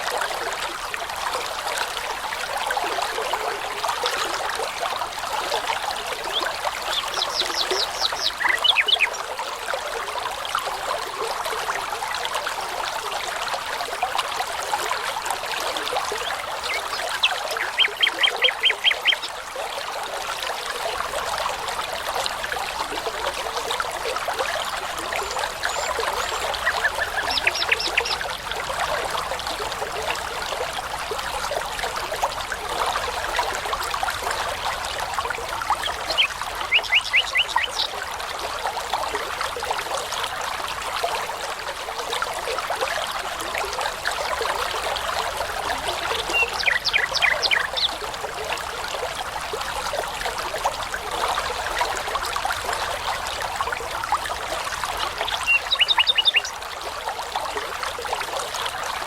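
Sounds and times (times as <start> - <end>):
babbling brook: 0.0 - 59.0
songbirds singing: 6.2 - 9.3, 16.1 - 19.4, 25.3 - 28.4, 35.8 - 38.0, 45.8 - 48.0, 55.1 - 56.6.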